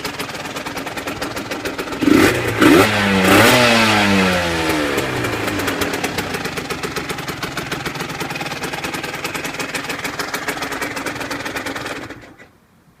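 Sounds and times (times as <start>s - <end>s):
motorcycle engine idling: 0.0s - 12.4s.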